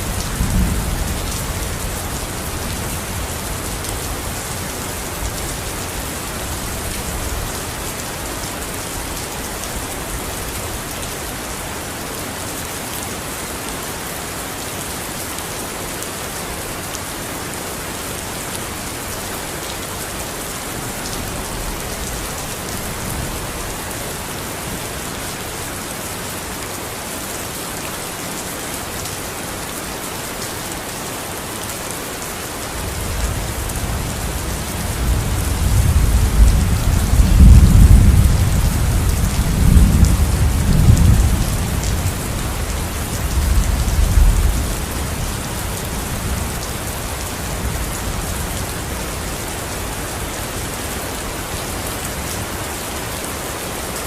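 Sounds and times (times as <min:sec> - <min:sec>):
heavy rain falling: 0:00.0 - 0:54.0
low rumble of thunder: 0:00.1 - 0:05.7, 0:32.8 - 0:48.5.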